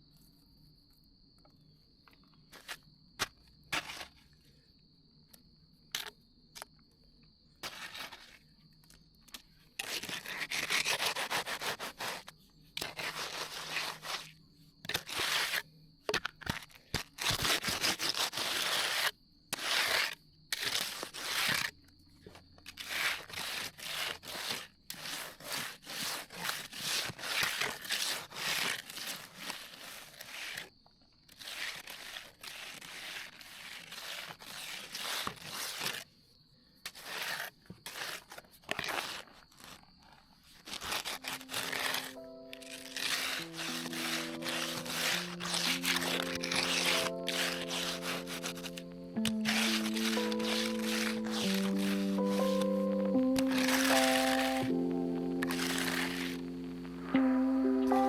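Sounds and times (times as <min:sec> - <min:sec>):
crickets chirping: 0:00.0 - 0:16.4, 0:37.5 - 0:53.4
hand tool scraping concrete: 0:02.6 - 0:04.2, 0:07.6 - 0:08.4, 0:09.8 - 0:21.7, 0:22.7 - 0:30.6, 0:31.3 - 0:36.0, 0:36.9 - 0:39.8, 0:40.7 - 0:52.4.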